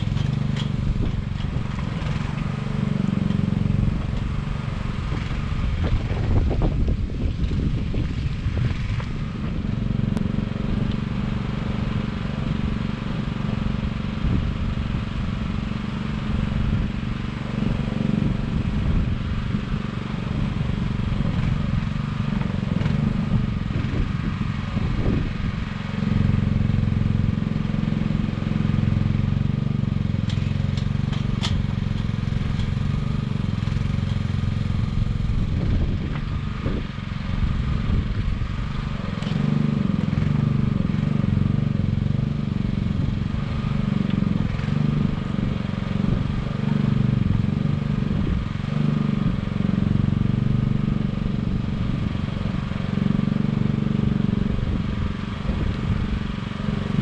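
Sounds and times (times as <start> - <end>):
engine running steadily: 0.0 - 57.0.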